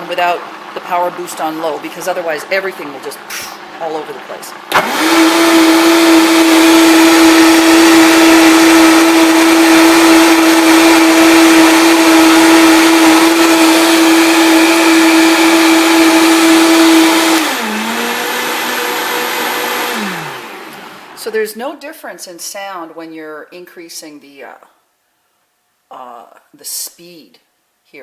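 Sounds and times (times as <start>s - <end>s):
blender motor whining: 4.7s - 21.2s.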